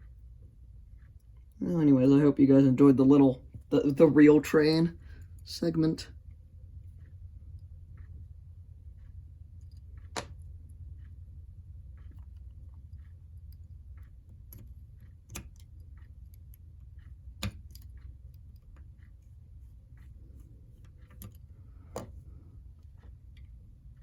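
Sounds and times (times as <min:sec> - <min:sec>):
steady low hum: 0:00.0 - 0:24.0
small parts clicking and tapping: 0:11.9 - 0:24.0.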